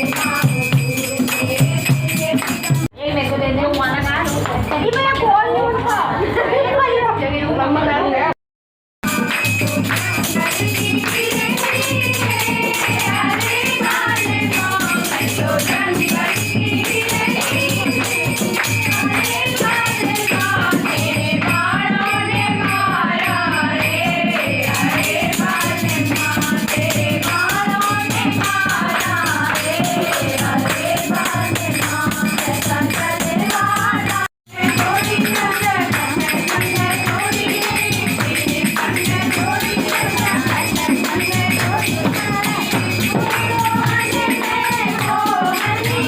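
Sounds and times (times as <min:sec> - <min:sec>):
group singing in chorus: 0:00.0 - 0:02.9, 0:09.0 - 0:46.0
steady drum beat: 0:00.0 - 0:02.9, 0:09.0 - 0:46.0
jingling hand percussion: 0:00.0 - 0:06.1, 0:09.0 - 0:46.0.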